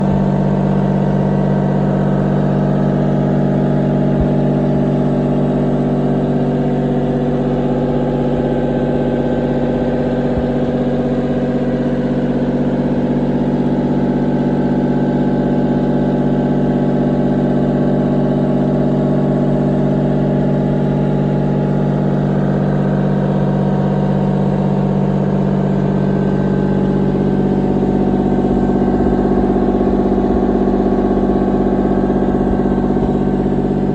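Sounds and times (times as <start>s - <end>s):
excavator diesel engine running: 0.0s - 33.9s.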